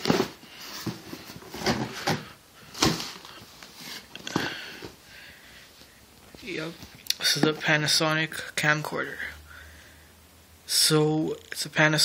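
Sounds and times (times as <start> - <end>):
cardboard and bubble wrap rustling: 0.0 - 5.0.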